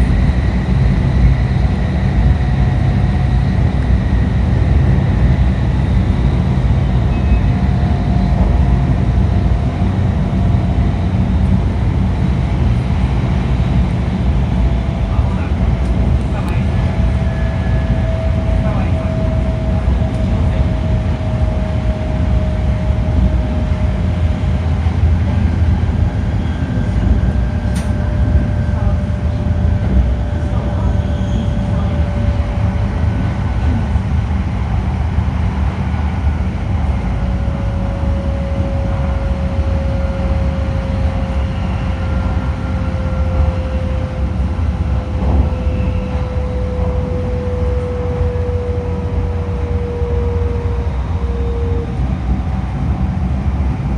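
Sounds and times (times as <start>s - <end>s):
rumble of wheels on track: 0.0s - 53.9s
inverter and motor whine: 31.0s - 53.9s.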